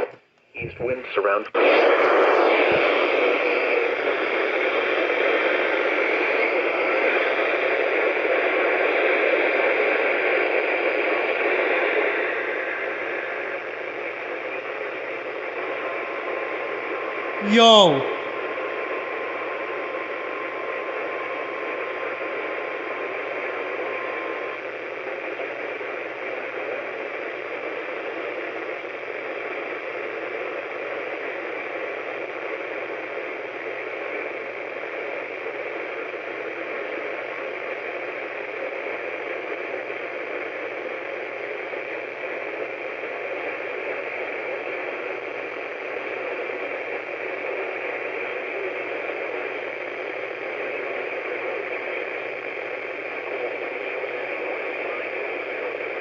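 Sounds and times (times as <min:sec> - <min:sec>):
radio static hiss: 0:00.0 - 0:06.6, 0:46.4 - 0:56.0.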